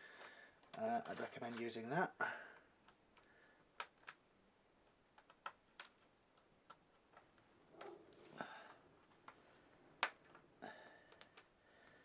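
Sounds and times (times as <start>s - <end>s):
plastic clips popping loose: 10.0s - 10.5s, 11.1s - 11.5s.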